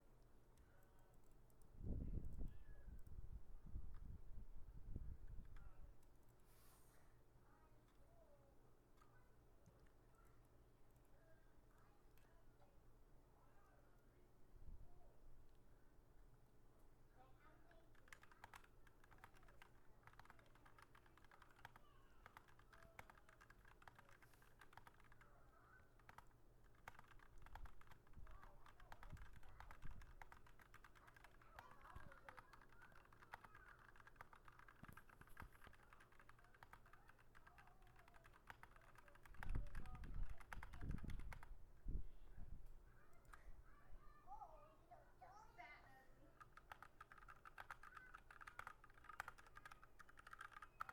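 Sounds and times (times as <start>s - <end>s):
rapid keyboard typing: 17.5s - 41.5s, 46.3s - 50.9s.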